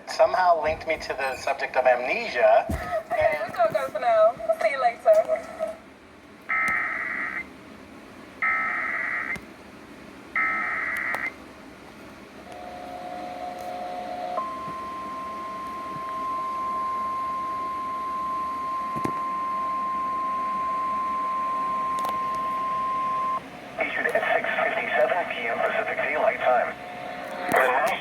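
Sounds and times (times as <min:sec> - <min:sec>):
steady warning alarm tone: 0:06.5 - 0:07.5, 0:08.4 - 0:09.4, 0:10.4 - 0:11.4, 0:12.5 - 0:28.0
lower double tone: 0:12.6 - 0:23.4.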